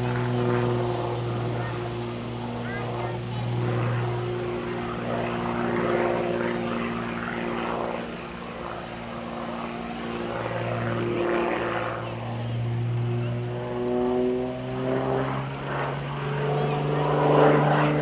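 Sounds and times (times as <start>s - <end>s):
propeller plane engine droning: 0.0s - 18.0s.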